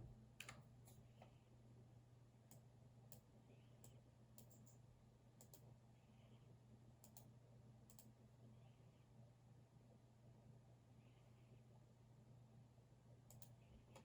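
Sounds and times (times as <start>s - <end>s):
low steady hum: 0.0s - 14.0s
keyboard and mouse clicks: 0.4s - 1.0s, 3.8s - 4.8s, 13.3s - 14.0s.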